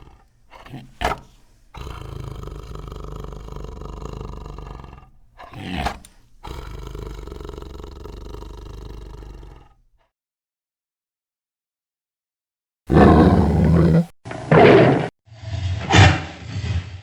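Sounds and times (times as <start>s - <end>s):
tiger growling: 0.0s - 9.9s, 12.9s - 14.9s
tiger roar: 0.0s - 9.9s, 12.9s - 15.1s.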